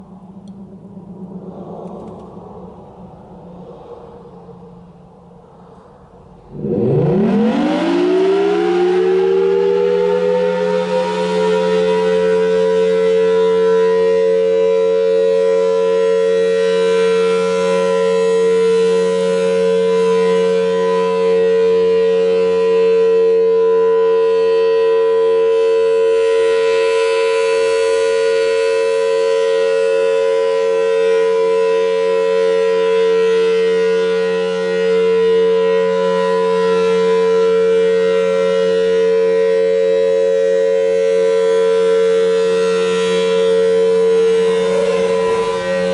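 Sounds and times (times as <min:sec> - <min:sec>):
low hum: 0:00.0 - 0:10.8, 0:43.3 - 0:45.9
warning siren steady tone: 0:00.0 - 0:45.9.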